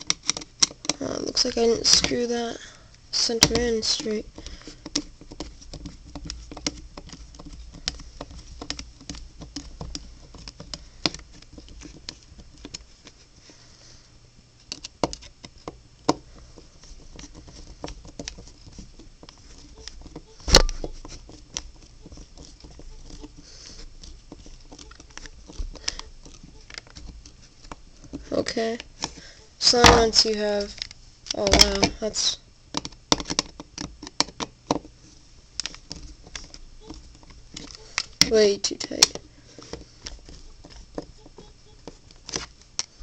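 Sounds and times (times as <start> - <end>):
plastic puzzle cube clicking: 0.0 - 1.0, 3.4 - 12.9, 14.6 - 16.2, 16.8 - 29.3, 32.7 - 34.9.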